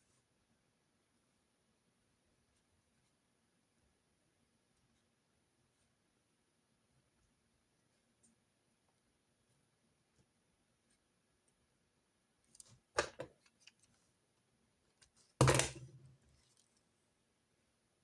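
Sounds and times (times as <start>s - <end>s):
objects knocking on desk: 15.4s - 15.8s.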